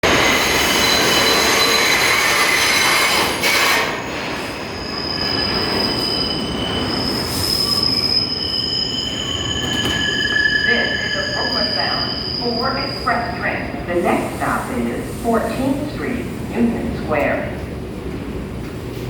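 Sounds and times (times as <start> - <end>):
subway train rumbling on rails: 0.0 - 19.0
train wheels squealing: 0.1 - 13.6.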